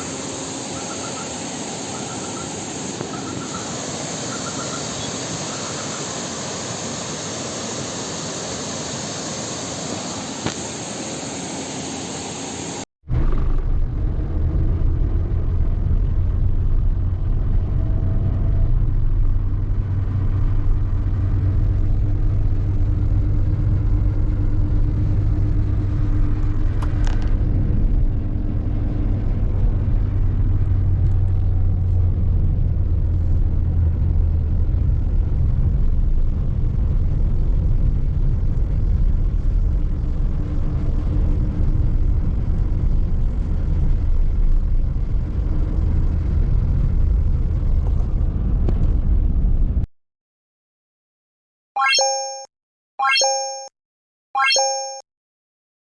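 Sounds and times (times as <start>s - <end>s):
vehicle engine rumbling: 13.1s - 49.8s
steady tone: 51.8s - 53.7s, 54.4s - 55.0s.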